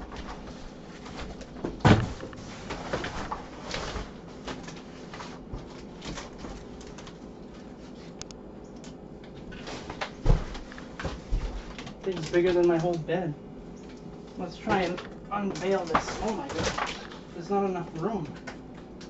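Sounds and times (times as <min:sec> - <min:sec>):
cardboard scraping and rustling: 0:00.2 - 0:06.7, 0:14.6 - 0:17.4.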